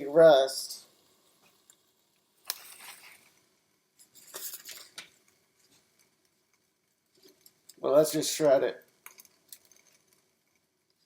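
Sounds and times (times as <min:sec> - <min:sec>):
kitchen scraping clatter: 0:04.0 - 0:05.0.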